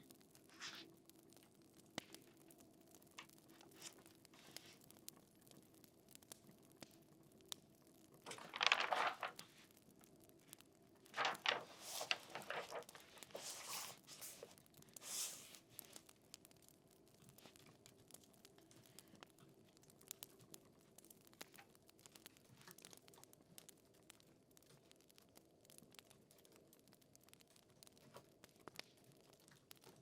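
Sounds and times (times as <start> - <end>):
paper rustling: 0.6 - 0.8, 8.3 - 9.6, 11.1 - 15.6
faint ticks: 0.7 - 7.8.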